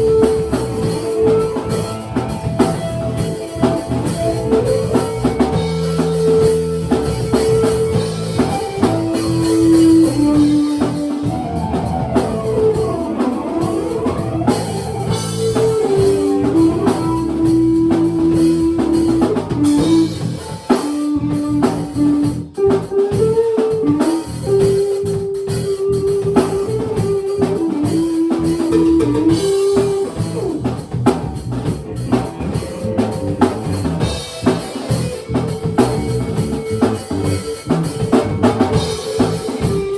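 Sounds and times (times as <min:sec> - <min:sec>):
melody of long held notes: 0:00.0 - 0:30.9
drum kit steady beat: 0:00.0 - 0:39.9
guitar: 0:00.0 - 0:39.9.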